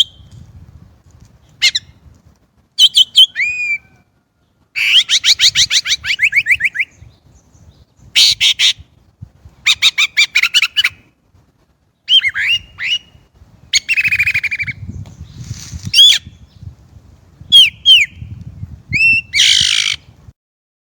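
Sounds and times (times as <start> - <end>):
blackbird singing: 2.8 - 4.0, 4.8 - 8.9, 9.7 - 11.0, 12.0 - 16.7, 17.5 - 18.4, 19.0 - 20.1.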